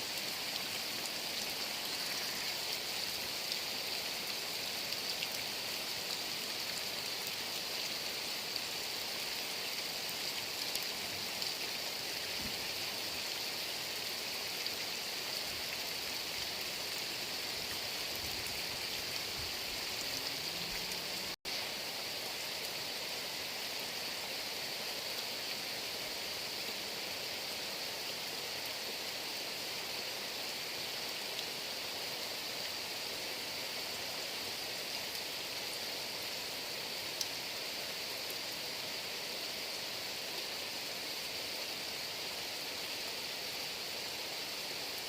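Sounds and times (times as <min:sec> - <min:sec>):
heavy rain falling: 0:00.0 - 0:27.8.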